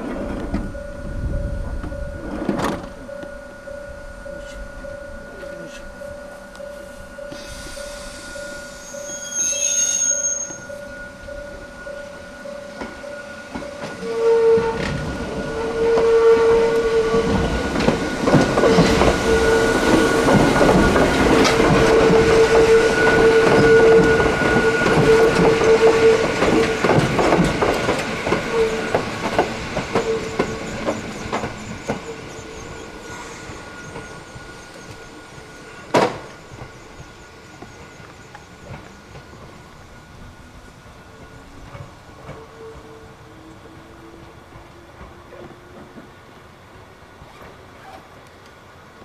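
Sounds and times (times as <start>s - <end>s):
high-pitched wheel squeal: 7.3s - 11.1s
wheels clicking over rail joints: 16.8s - 32.9s.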